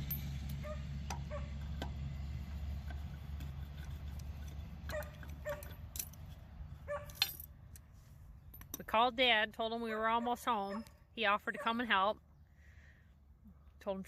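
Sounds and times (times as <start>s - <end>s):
vehicle engine rumble: 0.0s - 14.0s
dog yipping and barking: 0.6s - 1.6s, 4.9s - 5.7s, 6.9s - 7.2s.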